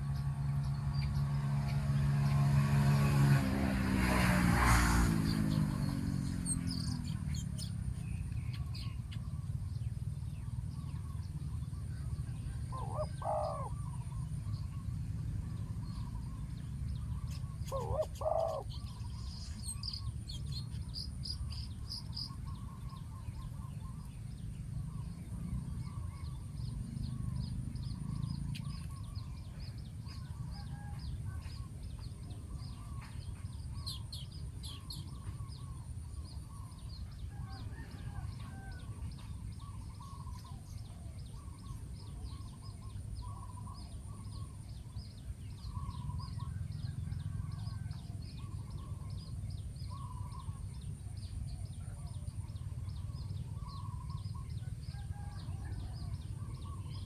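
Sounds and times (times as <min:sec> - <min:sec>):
small birds chirping: 0:04.6 - 0:57.0
doves cooing: 0:12.1 - 0:16.2, 0:17.5 - 0:19.0.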